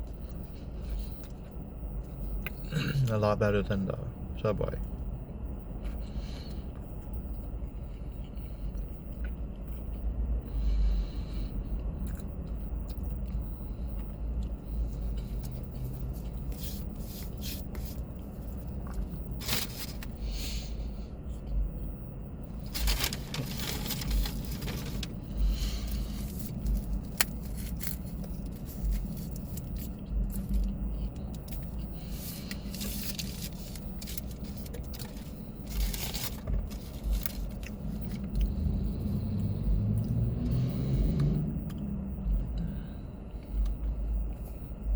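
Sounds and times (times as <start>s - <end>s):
steady low hum: 0.0s - 44.9s
person chewing: 11.8s - 20.2s, 22.6s - 41.0s
paper wrapper rustling: 15.2s - 20.2s, 22.6s - 30.6s, 31.4s - 38.2s.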